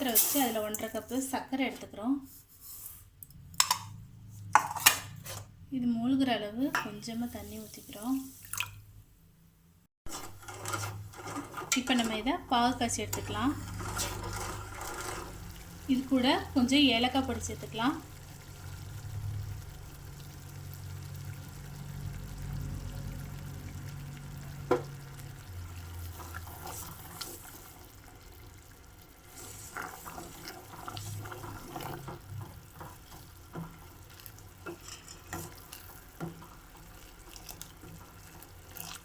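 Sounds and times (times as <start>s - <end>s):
syrup sloshing: 29.2s - 39.0s.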